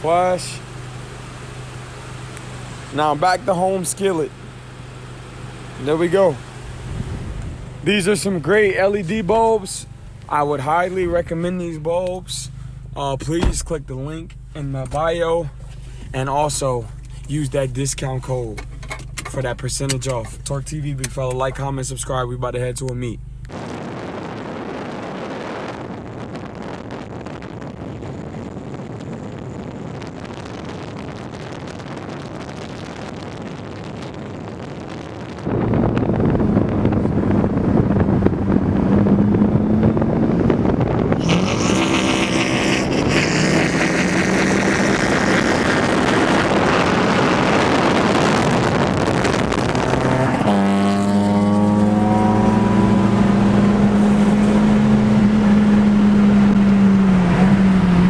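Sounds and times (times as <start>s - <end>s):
car engines revving: 0.0s - 23.6s, 35.4s - 58.0s
car road noise: 0.0s - 58.0s.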